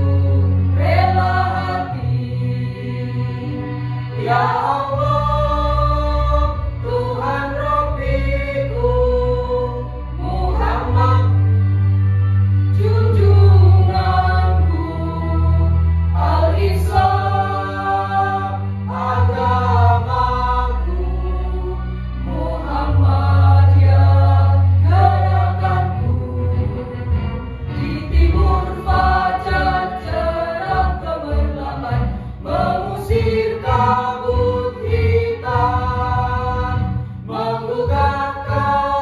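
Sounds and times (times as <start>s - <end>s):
children's choir singing: 0.0s - 11.6s, 12.7s - 39.0s
instrumental accompaniment: 0.0s - 39.0s.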